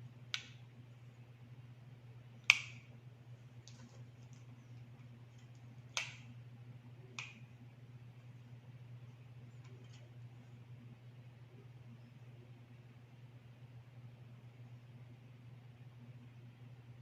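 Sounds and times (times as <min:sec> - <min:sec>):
faint steady hum: 0:00.0 - 0:17.0
sharp plastic clicks: 0:02.4 - 0:02.9, 0:05.5 - 0:06.3.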